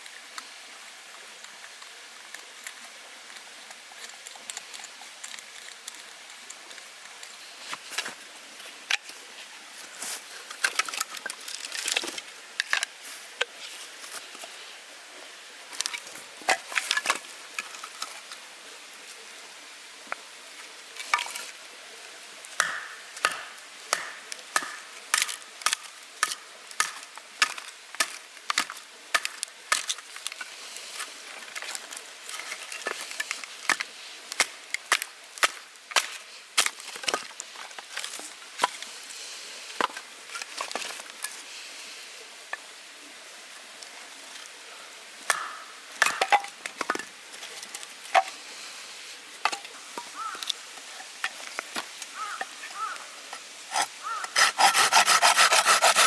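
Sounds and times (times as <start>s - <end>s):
firewood being chopped: 22.6s - 30.0s, 33.7s - 36.8s, 45.3s - 47.1s.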